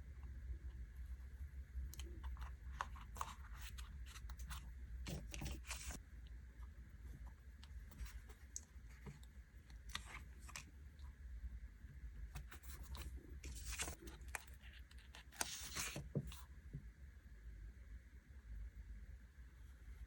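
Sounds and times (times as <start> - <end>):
paper crackling and rustling: 2.0 - 6.0, 12.4 - 16.4.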